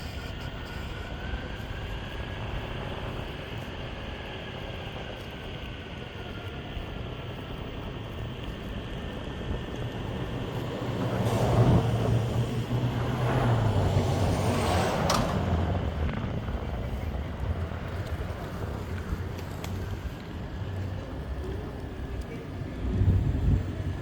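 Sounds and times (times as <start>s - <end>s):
low motor hum: 0.0s - 24.0s
skateboard wheels rolling on pavement: 0.8s - 24.0s
wind on microphone: 8.2s - 24.0s.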